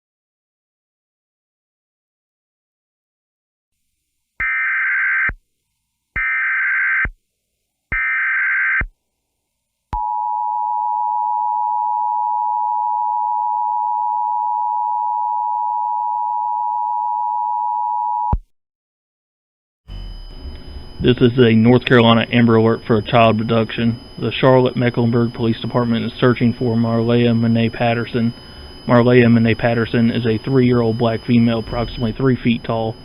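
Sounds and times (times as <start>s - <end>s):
two-tone alert signal: 19.9s - 26.0s, 30.5s - 33.0s
digital data bursts: 19.9s - 33.0s.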